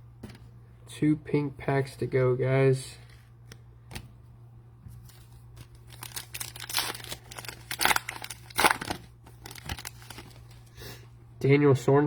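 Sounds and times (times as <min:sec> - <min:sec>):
cellophane wrapper tearing and crinkling: 0:05.1 - 0:10.7.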